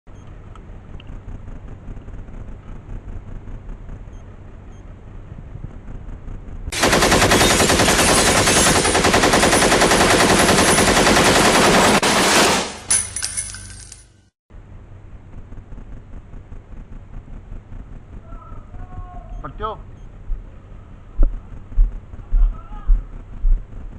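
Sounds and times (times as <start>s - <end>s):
low steady rumble: 0.1s - 6.8s, 12.9s - 23.9s
automatic gunfire: 6.7s - 12.8s.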